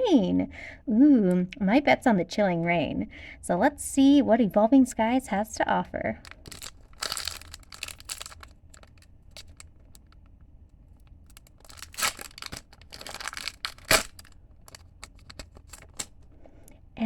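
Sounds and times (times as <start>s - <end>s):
card pack wrapper tearing: 6.2s - 10.2s, 11.0s - 16.3s.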